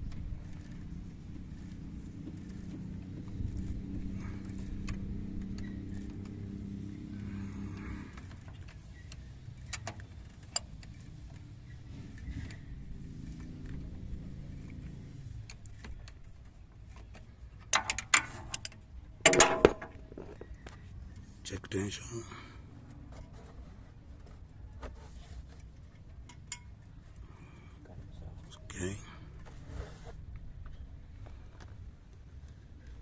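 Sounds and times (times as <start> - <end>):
car engine humming: 0.0 - 17.7.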